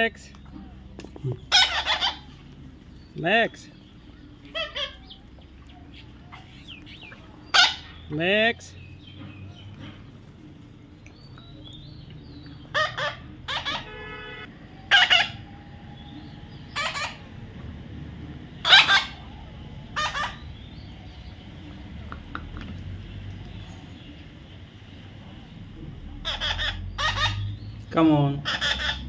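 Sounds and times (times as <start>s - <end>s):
parrot screeching: 1.5s - 2.3s, 4.5s - 5.1s, 7.5s - 7.9s, 12.7s - 14.0s, 14.9s - 15.5s, 16.7s - 17.2s, 18.6s - 19.2s, 19.9s - 20.5s, 26.2s - 27.6s, 28.4s - 29.0s.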